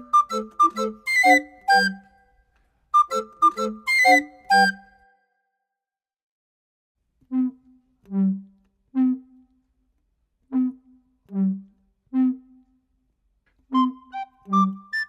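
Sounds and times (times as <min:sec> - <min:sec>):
wind instrument notes: 0:00.0 - 0:02.2, 0:03.0 - 0:05.0, 0:13.7 - 0:15.0.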